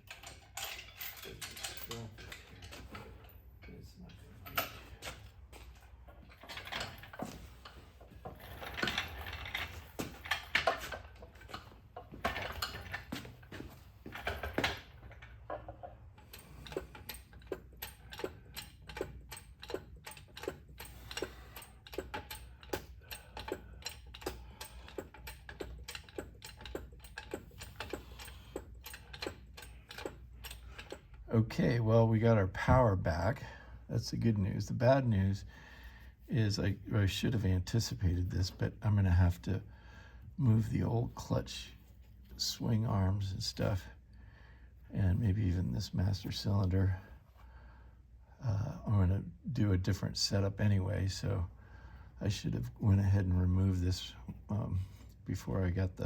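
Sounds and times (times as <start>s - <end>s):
hand tools tapping metal: 0.0s - 5.7s, 6.4s - 31.2s.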